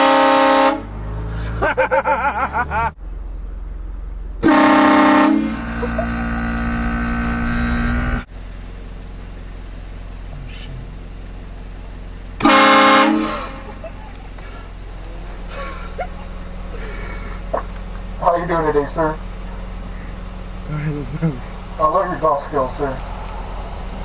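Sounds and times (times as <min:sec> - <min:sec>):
train horn blasting a chord: 0:00.0 - 0:00.9, 0:04.4 - 0:05.8, 0:12.4 - 0:13.7
steady low hum: 0:02.5 - 0:24.0.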